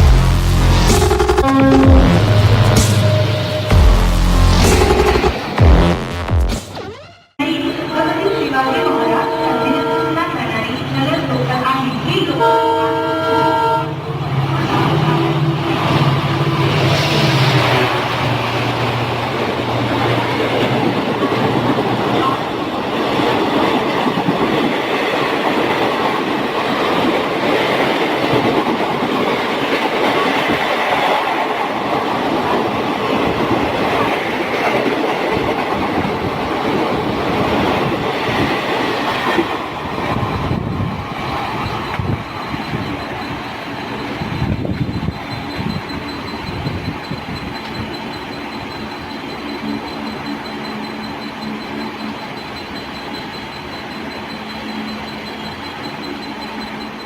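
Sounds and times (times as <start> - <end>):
locomotive horn: 0.0 - 5.3, 8.8 - 10.5, 12.4 - 14.0
train coaches rolling past: 0.0 - 5.6, 7.4 - 57.0.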